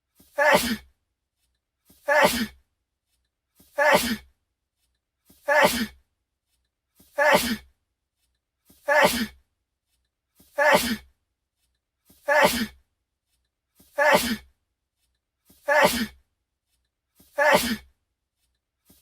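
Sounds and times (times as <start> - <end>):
person sneezing: 0.4 - 0.8, 2.0 - 2.6, 3.8 - 4.2, 5.4 - 6.0, 7.2 - 7.6, 8.8 - 9.4, 10.6 - 11.0, 12.3 - 12.8, 14.0 - 14.5, 15.7 - 16.2, 17.4 - 17.9.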